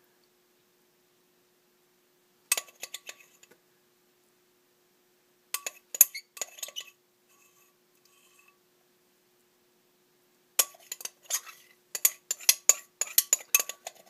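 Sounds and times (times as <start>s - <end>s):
faint steady hum: 0.0s - 14.0s
utensil clinking on container: 10.6s - 14.0s.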